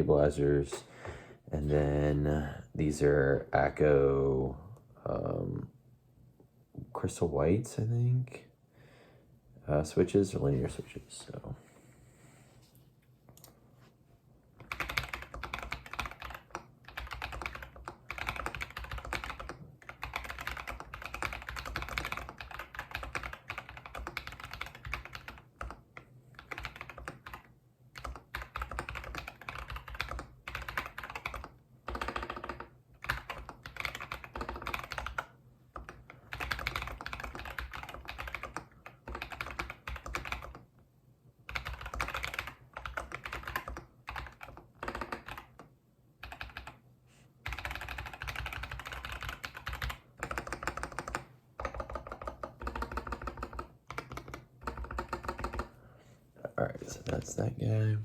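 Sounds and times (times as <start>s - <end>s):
mechanical keyboard typing: 14.6s - 40.7s, 41.5s - 46.8s, 47.4s - 55.7s.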